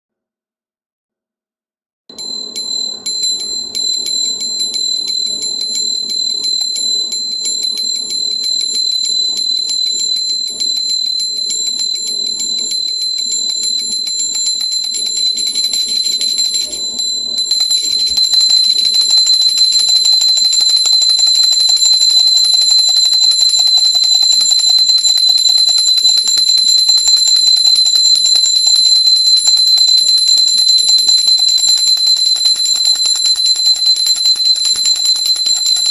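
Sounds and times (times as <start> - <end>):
hand bell ringing rapidly: 2.1 - 35.9.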